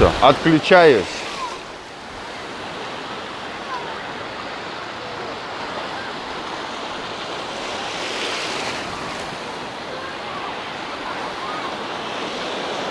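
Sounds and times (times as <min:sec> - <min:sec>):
wave breaking: 0:00.0 - 0:01.7
sea surf washing onto beach: 0:00.0 - 0:12.9
wind: 0:00.0 - 0:12.9.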